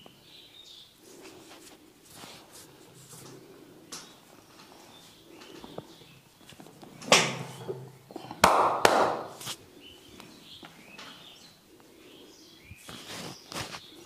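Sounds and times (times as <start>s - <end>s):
hands rubbing: 1.1s - 3.6s, 9.1s - 9.6s.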